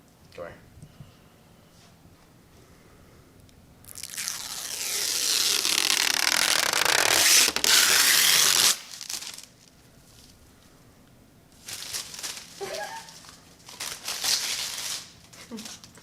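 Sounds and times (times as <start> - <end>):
plastic film peeling off glass: 3.9 - 9.6, 11.7 - 15.8.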